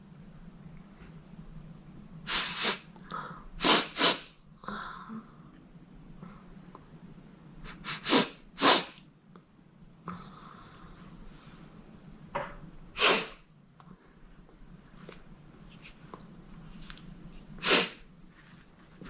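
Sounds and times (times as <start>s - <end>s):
girl sneezing: 13.0s - 13.4s, 17.6s - 18.0s.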